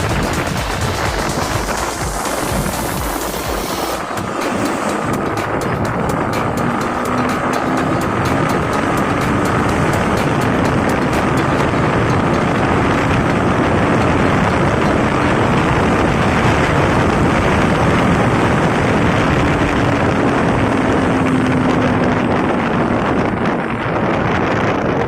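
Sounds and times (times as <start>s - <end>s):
motorcycle engine running: 0.0s - 25.0s
wind rush on microphone: 0.0s - 25.0s.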